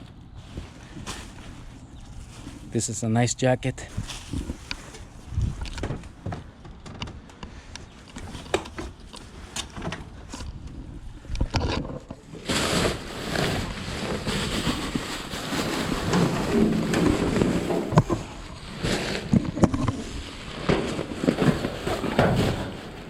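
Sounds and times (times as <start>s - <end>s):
clothing rustling: 0.0s - 2.8s, 12.4s - 19.3s.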